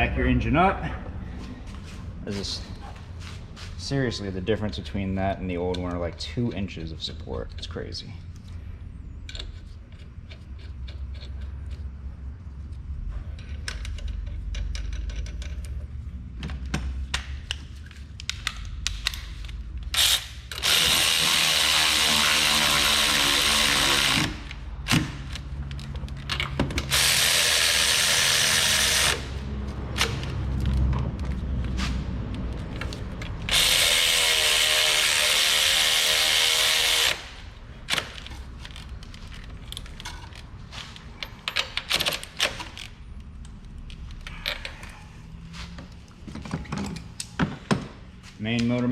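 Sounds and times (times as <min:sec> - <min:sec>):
tool handling clicks and knocks: 0:12.6 - 0:20.8, 0:24.4 - 0:27.0, 0:37.8 - 0:45.0, 0:45.7 - 0:48.9
cordless power tool driving bolts: 0:19.9 - 0:25.4, 0:26.3 - 0:29.4, 0:32.8 - 0:38.3.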